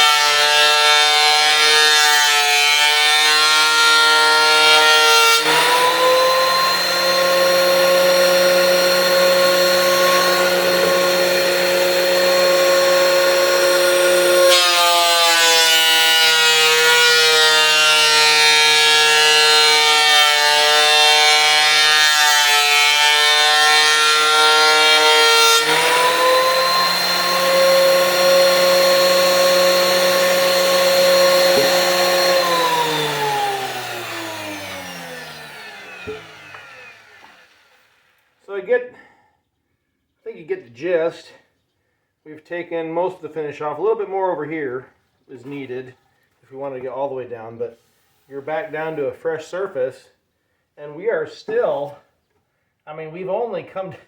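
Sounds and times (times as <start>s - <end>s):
planer cutting wood: 0.0s - 38.1s
thickness planer motor whine: 0.0s - 38.1s
motor spinning down: 5.4s - 14.4s, 25.7s - 37.9s.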